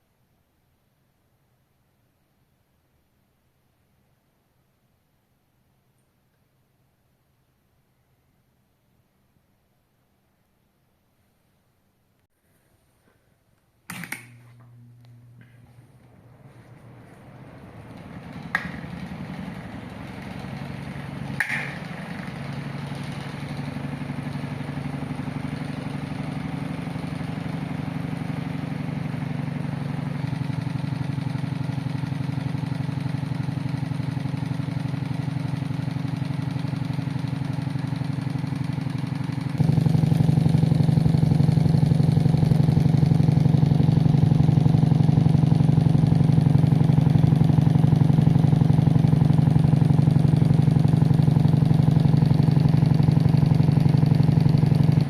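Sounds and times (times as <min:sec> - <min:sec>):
electric fan motor hum: 0:13.8 - 0:55.0
fan switch click: 0:13.9 - 0:16.2, 0:17.8 - 0:20.4, 0:21.2 - 0:22.5.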